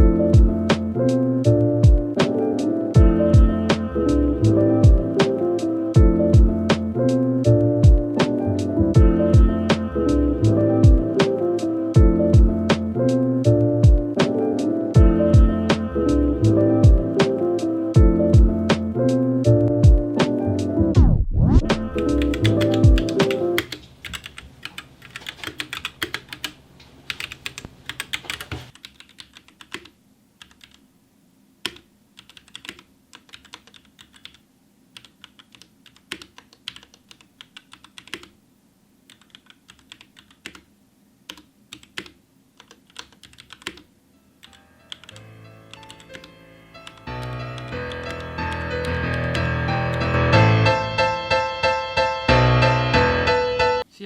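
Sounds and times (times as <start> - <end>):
background music: 0.0 - 23.7, 44.2 - 54.0
mechanical keyboard typing: 22.1 - 30.8, 31.6 - 34.4, 35.0 - 38.4, 39.1 - 40.7, 41.3 - 50.2.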